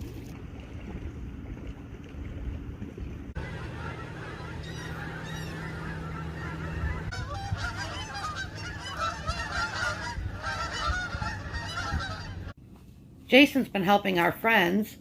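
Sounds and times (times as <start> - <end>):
geese honking: 3.4 - 12.6.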